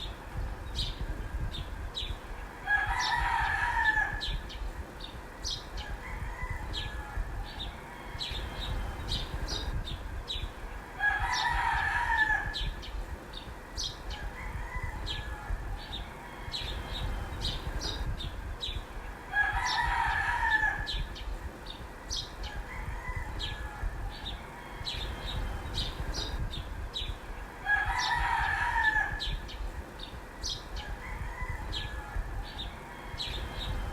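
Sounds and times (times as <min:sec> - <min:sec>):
rooster crowing: 0:02.6 - 0:04.5, 0:05.8 - 0:08.8, 0:11.0 - 0:12.8, 0:14.1 - 0:17.2, 0:19.3 - 0:21.2, 0:22.4 - 0:25.4, 0:27.6 - 0:29.4, 0:30.8 - 0:33.8.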